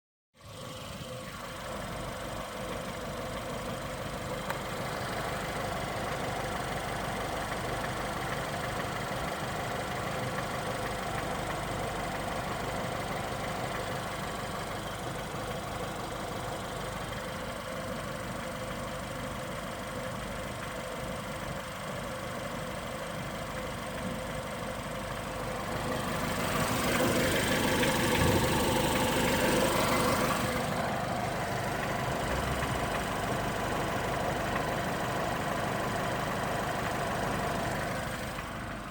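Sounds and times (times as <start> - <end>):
car engine idling: 0.4 - 38.9
heavy engine knock: 26.0 - 35.1.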